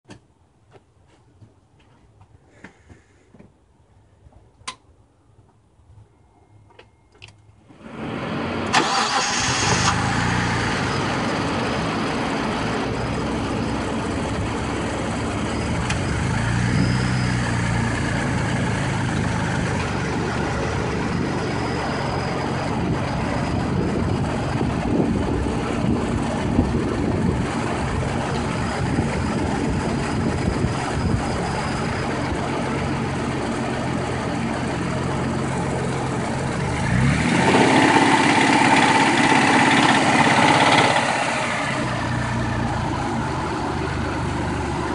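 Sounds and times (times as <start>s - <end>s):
noise from engine bay: 6.6s - 16.6s
car engine cranking and idling: 6.7s - 44.9s.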